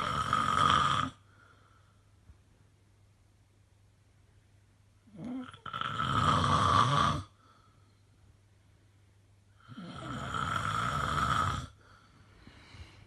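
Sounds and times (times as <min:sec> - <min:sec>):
rasping snoring: 0:00.0 - 0:01.2, 0:05.1 - 0:07.4, 0:09.6 - 0:11.8.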